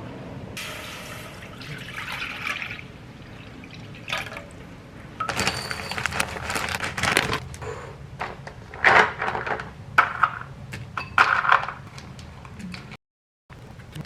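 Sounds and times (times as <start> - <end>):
liquid pouring and splashing: 0.6 - 4.7.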